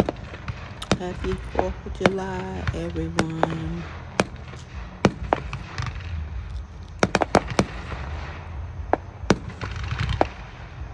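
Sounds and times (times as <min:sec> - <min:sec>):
fireworks bursting: 0:00.0 - 0:10.9
steady low rumble: 0:00.0 - 0:10.9.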